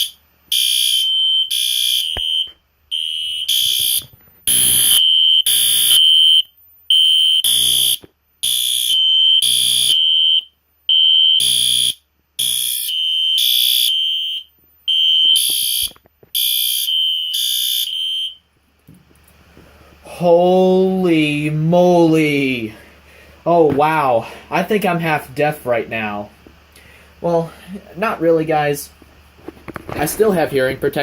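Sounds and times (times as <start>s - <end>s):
fire alarm horn blasts: 0.0s - 18.4s.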